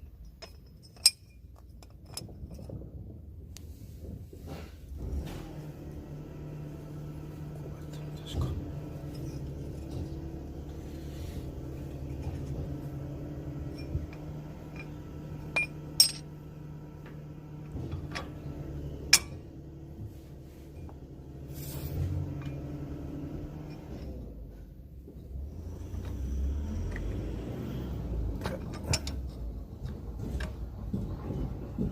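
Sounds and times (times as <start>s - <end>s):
engine hum: 0.0s - 31.9s
sharp metallic clinks: 13.7s - 16.3s.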